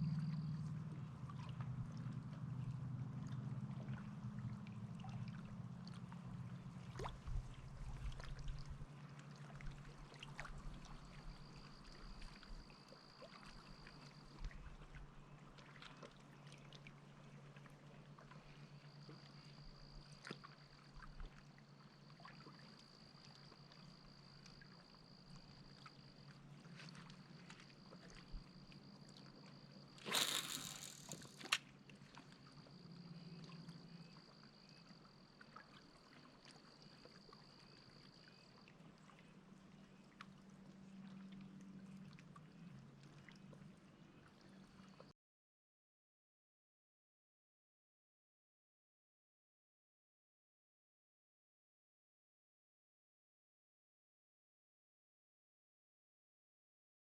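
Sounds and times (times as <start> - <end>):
water sloshing and trickling: 0.2 - 45.1
water splash: 30.0 - 31.6.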